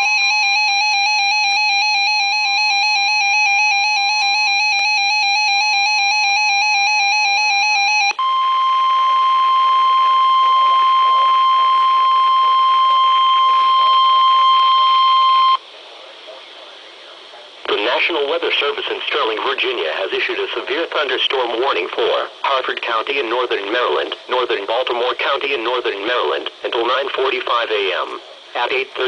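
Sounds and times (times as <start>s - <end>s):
steady warning tone: 0.0s - 15.6s
warbling two-pitch alarm: 0.0s - 15.6s.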